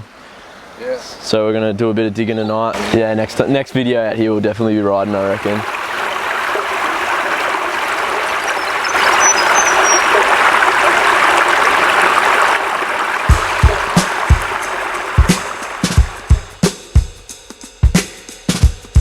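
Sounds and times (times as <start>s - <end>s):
flowing water rushing: 2.8s - 3.6s, 4.6s - 16.6s
music with kick drum beat: 13.3s - 19.0s.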